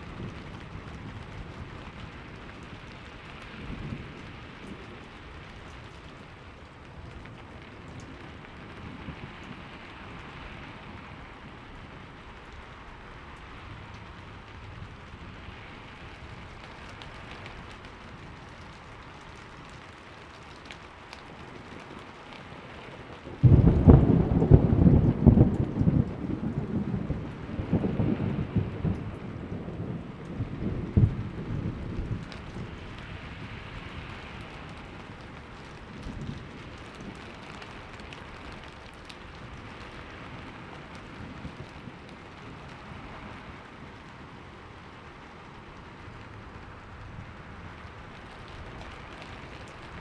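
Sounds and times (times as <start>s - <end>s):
heavy rain: 0.0s - 50.0s
distant thunder rumbling: 23.3s - 44.3s
loud thunder clap: 23.4s - 32.2s.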